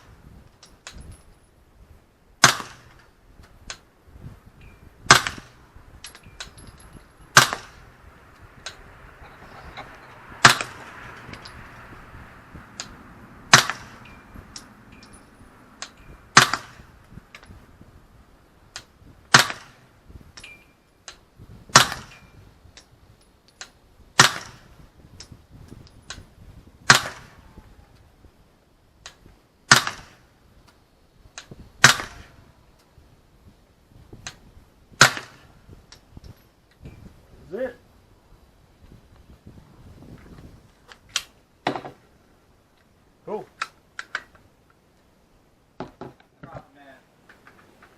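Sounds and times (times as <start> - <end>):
loud gunshots: 16.3 - 16.9.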